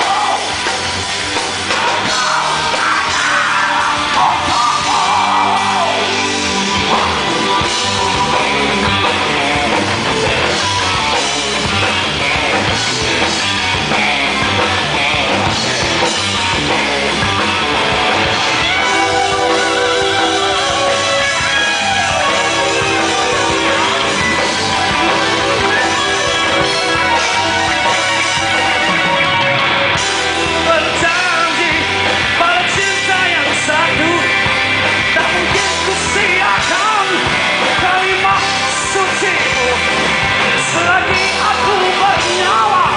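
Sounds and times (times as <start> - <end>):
bass guitar: 0.0 - 42.9
distorted electric guitar: 0.0 - 42.9
drum kit: 0.0 - 42.9
man singing: 1.8 - 6.2, 30.4 - 42.9.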